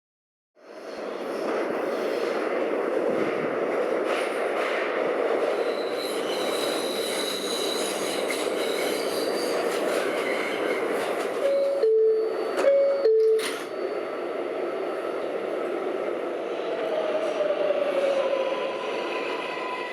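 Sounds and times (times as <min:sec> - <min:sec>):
subway train rumbling: 0:00.6 - 0:19.9
high wheel squeal: 0:05.6 - 0:11.2
two-note door chime: 0:11.5 - 0:13.7.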